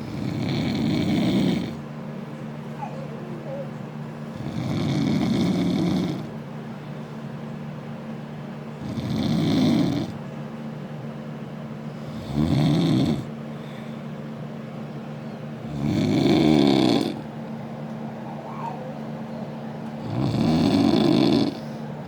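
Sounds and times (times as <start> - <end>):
man snoring loudly: 0.0 - 1.8, 4.4 - 6.3, 8.8 - 10.2, 12.1 - 13.3, 15.6 - 17.2, 20.0 - 21.7.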